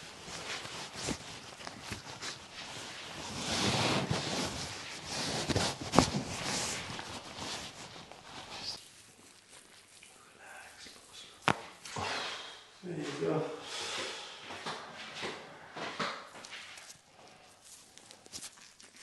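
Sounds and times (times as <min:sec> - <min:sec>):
handling rustle: 0:00.0 - 0:11.9, 0:16.3 - 0:19.0.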